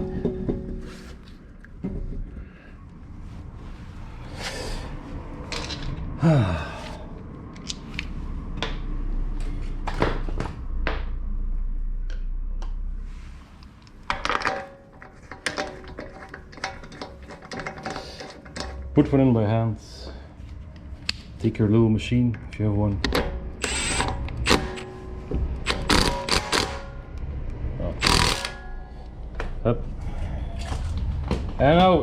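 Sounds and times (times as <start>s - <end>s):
low steady hum: 0.0s - 32.0s
metal clinks of wheel bolts: 14.1s - 19.0s.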